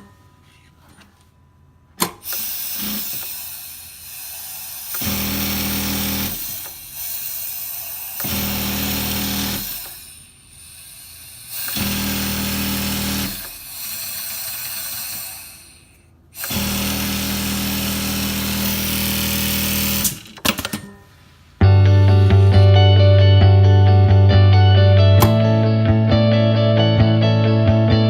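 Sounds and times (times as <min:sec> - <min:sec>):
sewing machine humming: 0:02.2 - 0:20.9.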